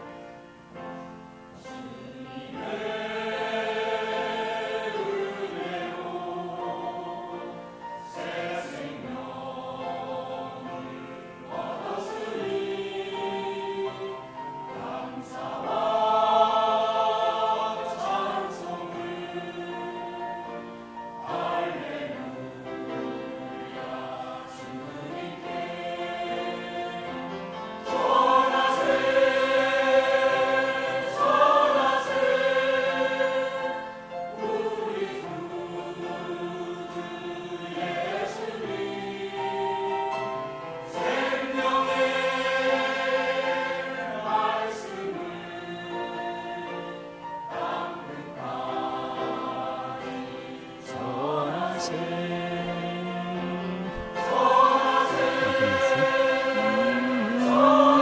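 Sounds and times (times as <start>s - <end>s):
group singing a hymn: 0.0s - 58.0s.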